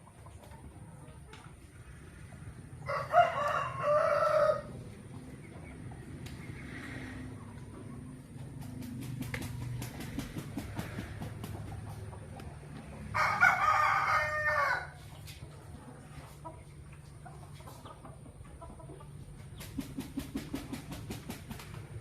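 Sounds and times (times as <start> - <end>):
faint chicken calls: 0.0 - 8.9, 9.9 - 21.7
rooster crowing: 2.8 - 4.8, 13.1 - 15.0.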